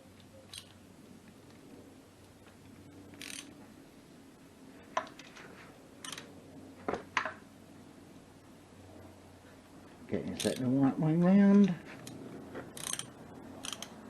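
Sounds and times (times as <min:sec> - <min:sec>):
metal tools clicking and knocking: 0:10.4 - 0:10.7, 0:12.8 - 0:14.0.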